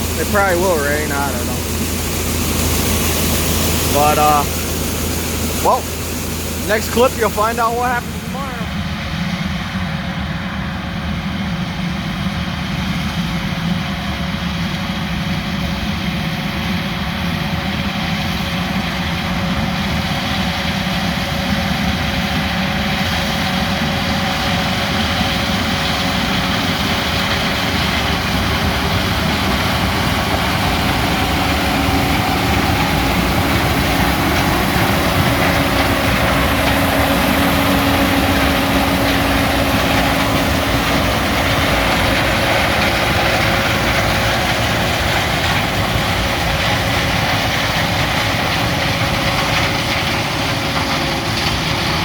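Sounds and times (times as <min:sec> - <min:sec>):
steady hum: 0:00.0 - 0:09.1
diesel engine drone: 0:00.0 - 0:52.0.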